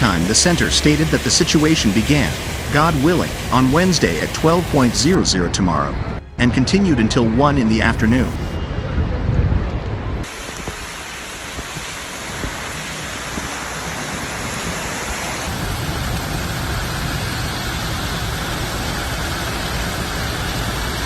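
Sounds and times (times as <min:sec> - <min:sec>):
heavy rain pouring: 0:00.0 - 0:05.2, 0:10.0 - 0:21.0.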